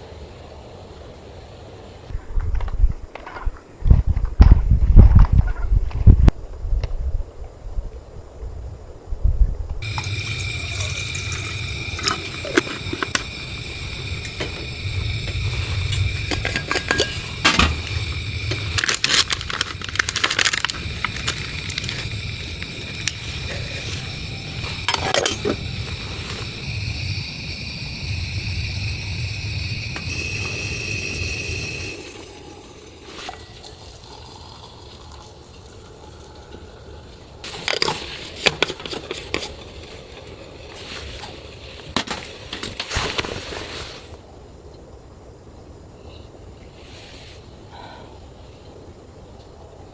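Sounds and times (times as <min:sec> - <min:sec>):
low rumble: 0:09.3 - 0:33.0
cookware and utensils clinking: 0:16.2 - 0:18.0.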